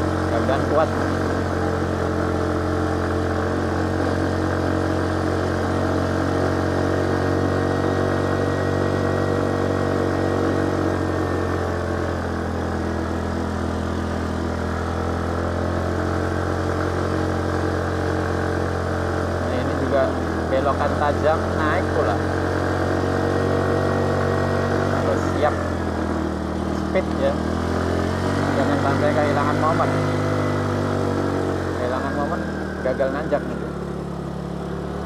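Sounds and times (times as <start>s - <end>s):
motorcycle engine pulling uphill: 0.0s - 35.0s.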